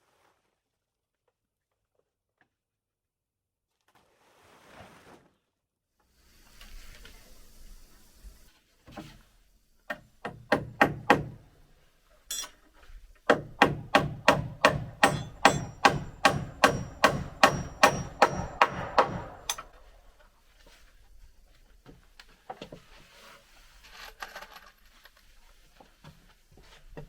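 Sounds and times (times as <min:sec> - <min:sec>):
hammer striking nails: 0:09.9 - 0:11.5, 0:13.3 - 0:19.8.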